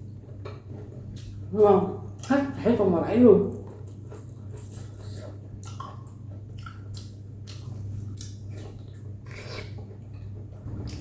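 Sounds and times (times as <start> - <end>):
steady low hum: 0.0 - 11.0
person chewing noodles: 3.6 - 11.0.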